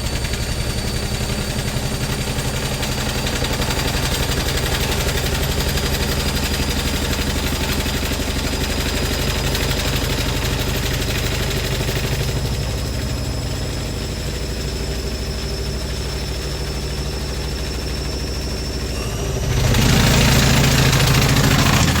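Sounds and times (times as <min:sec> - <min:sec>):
washing machine motor whine: 0:00.0 - 0:22.0
washing machine rattling and knocking: 0:01.3 - 0:14.6, 0:19.2 - 0:22.0.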